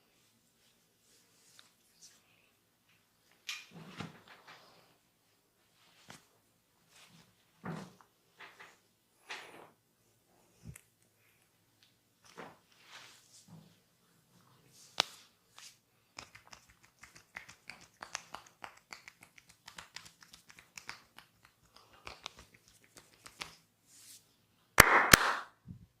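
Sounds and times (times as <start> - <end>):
hands massaging scalp crackles: 14.9 - 24.2
sharp cracks: 24.8 - 25.6.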